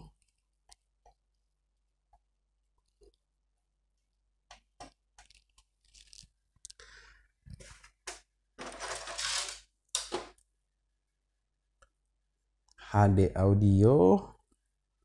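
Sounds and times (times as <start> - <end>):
cables rustling and crinkling: 4.8 - 10.5.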